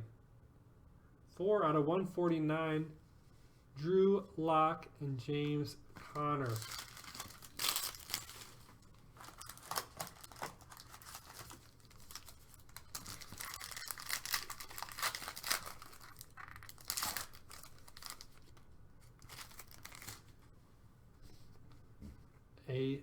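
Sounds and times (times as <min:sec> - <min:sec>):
foil wrapper tearing and crinkling: 0:06.1 - 0:20.4.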